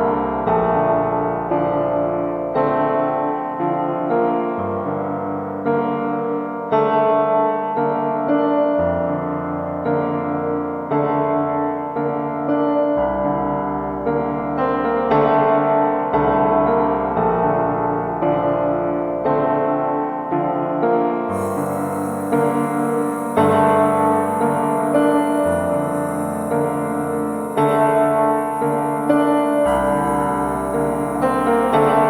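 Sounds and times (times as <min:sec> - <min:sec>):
slow piano chords: 0:21.0 - 0:32.0.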